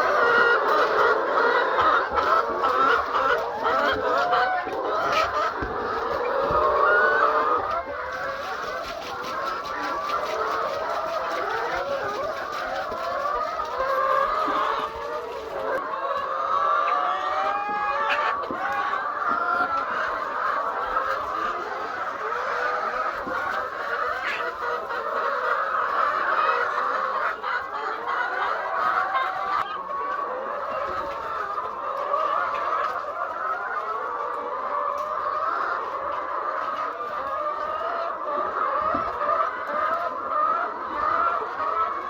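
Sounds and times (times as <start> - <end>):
hens clucking: 0.0 - 42.0.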